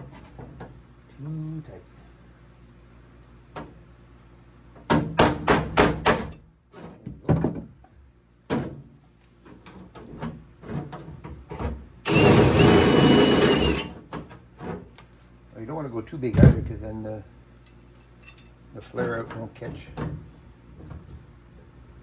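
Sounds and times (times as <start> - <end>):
drill whining: 12.0 - 13.9.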